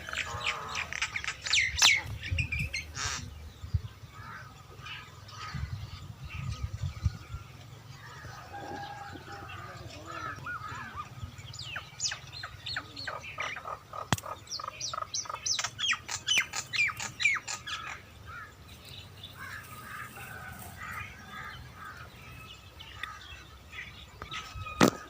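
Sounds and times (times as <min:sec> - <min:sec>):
birds chirping: 0:00.0 - 0:25.0.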